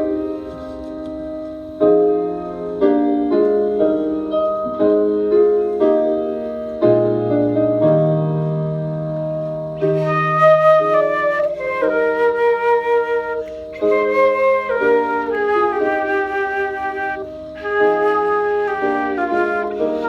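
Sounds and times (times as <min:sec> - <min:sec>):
flute melody over held chords: 0:09.8 - 0:20.0.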